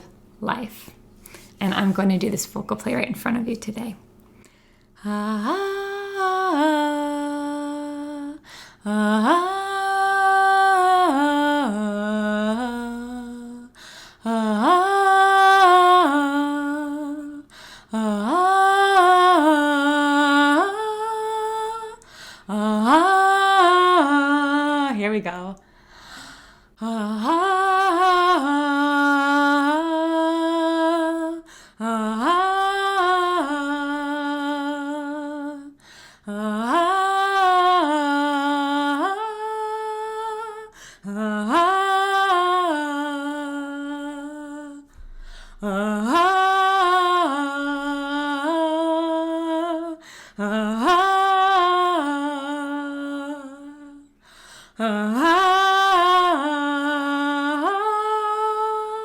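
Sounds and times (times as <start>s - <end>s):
woman singing wordless phrase: 0.0s - 1.0s, 1.6s - 4.0s, 5.0s - 25.6s, 26.8s - 45.0s, 45.6s - 54.1s, 54.7s - 59.0s
woman breathing: 1.2s - 1.6s, 4.3s - 5.0s, 8.4s - 8.9s, 13.7s - 14.3s, 17.5s - 18.0s, 22.0s - 22.5s, 25.6s - 26.8s, 31.4s - 31.8s, 35.8s - 36.3s, 40.7s - 41.1s, 44.9s - 45.6s, 50.0s - 50.4s, 54.1s - 54.8s.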